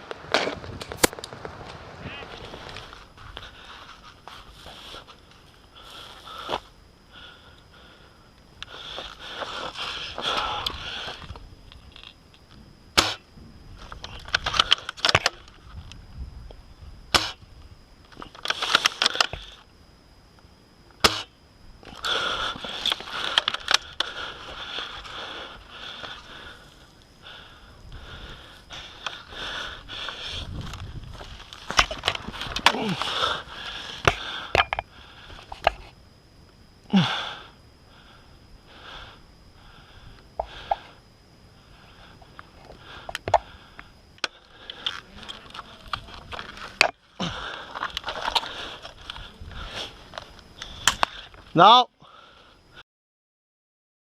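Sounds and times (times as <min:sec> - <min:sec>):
noisy puff: 0:13.0 - 0:13.3, 0:17.1 - 0:17.5, 0:21.0 - 0:21.4.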